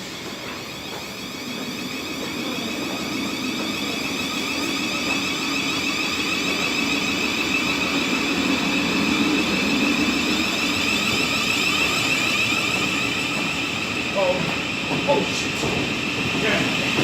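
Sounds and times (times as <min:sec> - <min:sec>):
electric train whine and hum: 0:00.0 - 0:17.0.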